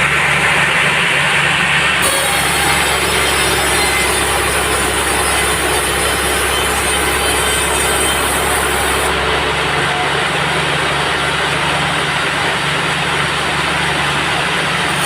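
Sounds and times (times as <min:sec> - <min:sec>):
band sawmill cutting log: 0:00.0 - 0:15.0
high hiss of saw: 0:02.0 - 0:09.1.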